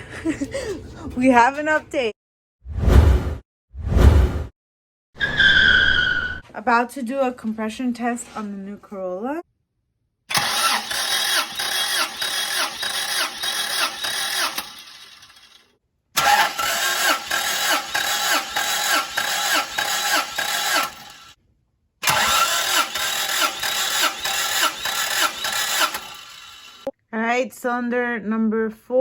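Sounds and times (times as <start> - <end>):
engine cranking without firing: 10.3 - 15.6, 16.2 - 21.4, 22.0 - 26.9.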